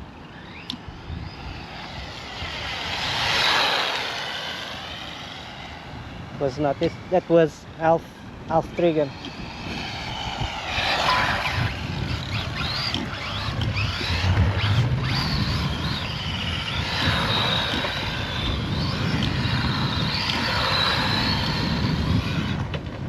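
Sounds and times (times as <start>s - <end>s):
electric motor whining: 0.0s - 23.0s.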